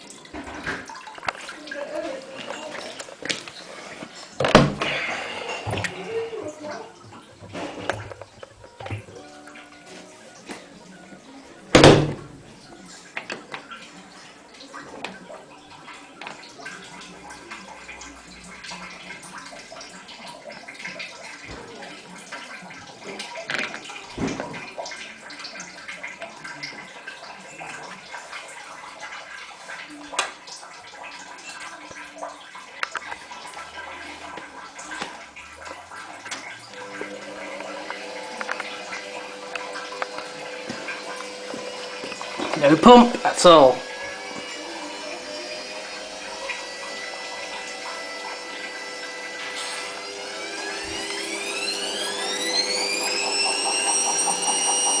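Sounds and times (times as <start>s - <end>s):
water splashing in washing machine: 0.0s - 55.0s
washing machine motor whine: 35.7s - 55.0s.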